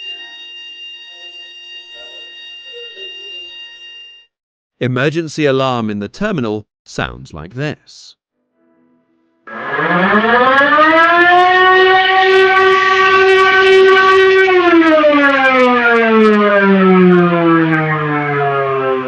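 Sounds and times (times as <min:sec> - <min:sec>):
wailing alarm siren: 0:00.0 - 0:04.3, 0:09.5 - 0:19.0.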